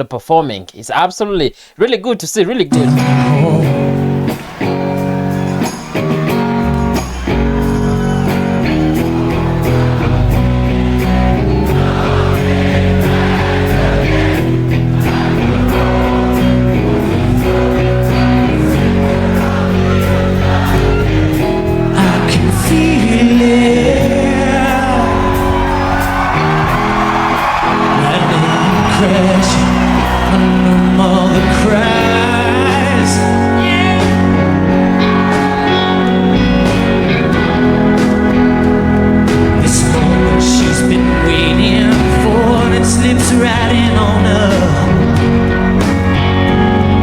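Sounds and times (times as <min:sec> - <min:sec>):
man singing lead: 0:02.7 - 0:04.3, 0:12.2 - 0:38.2, 0:39.1 - 0:45.8
live rock band playing ballad: 0:02.7 - 0:47.0.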